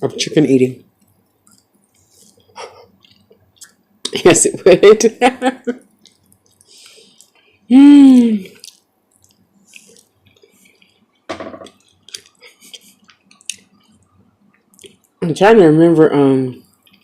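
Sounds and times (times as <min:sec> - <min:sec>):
chewing and lip-smacking: 0:00.9 - 0:04.2, 0:05.8 - 0:07.5, 0:08.4 - 0:15.2, 0:16.6 - 0:17.0.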